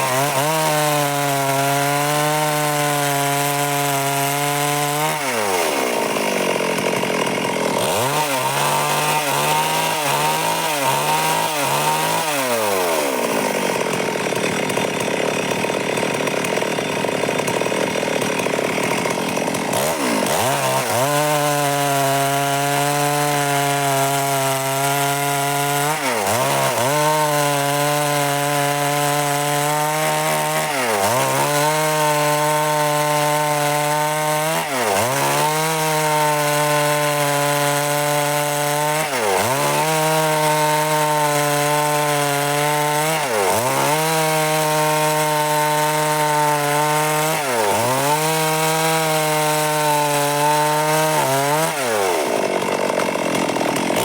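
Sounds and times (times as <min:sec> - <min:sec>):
chainsaw cutting wood: 0:00.0 - 0:54.0.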